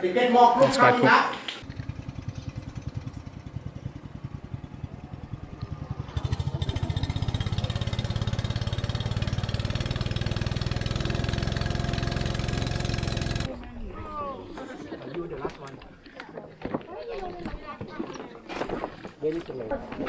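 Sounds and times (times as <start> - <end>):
boat engine pulsing: 1.4 - 13.5.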